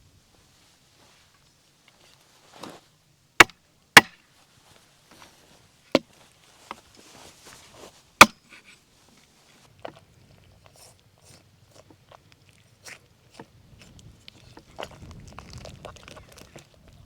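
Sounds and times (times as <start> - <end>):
knife chop on wood: 3.4 - 4.2.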